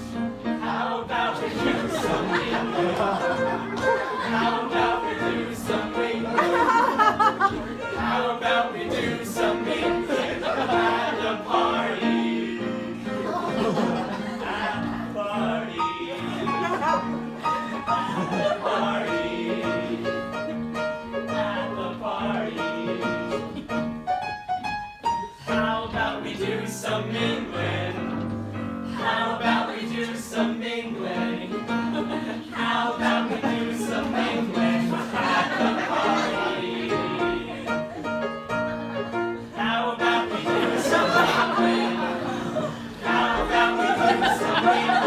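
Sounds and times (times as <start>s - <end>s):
group of voices singing: 0.0s - 23.9s, 25.3s - 45.0s.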